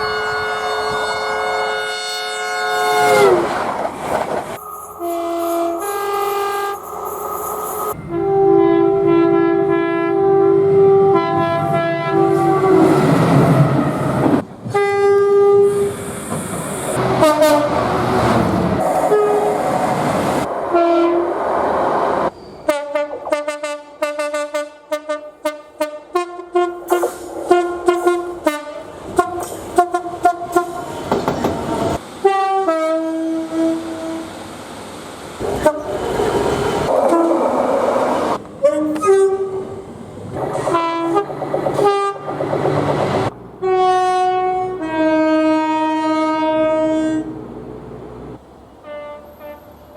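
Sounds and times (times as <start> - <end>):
train horn blasts: 0.0 - 3.5, 4.7 - 14.1, 14.7 - 16.0, 17.1 - 17.9, 19.1 - 19.6, 20.7 - 21.3, 22.7 - 30.9, 32.2 - 34.3, 35.4 - 36.1, 36.9 - 37.6, 38.6 - 39.7, 40.6 - 42.3, 43.6 - 47.4, 48.8 - 49.8
passing trains rumbling: 0.0 - 49.9.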